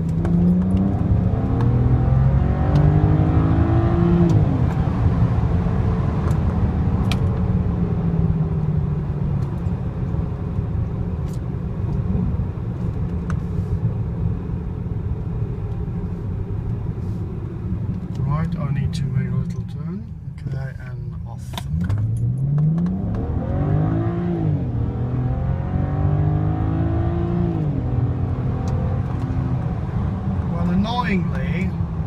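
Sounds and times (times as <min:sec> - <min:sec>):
car engine accelerating: 0:00.0 - 0:13.3, 0:21.4 - 0:32.0.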